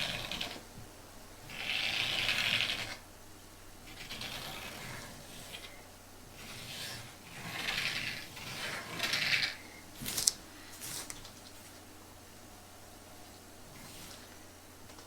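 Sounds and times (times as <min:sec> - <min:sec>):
rubbing small objects: 0:03.8 - 0:11.9.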